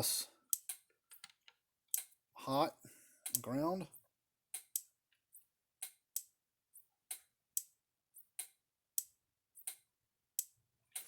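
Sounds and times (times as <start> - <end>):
electric fence charger ticks: 0.0 - 2.6, 3.2 - 4.0, 4.6 - 4.9, 5.8 - 6.3, 7.1 - 7.7, 8.4 - 9.8, 10.4 - 11.0.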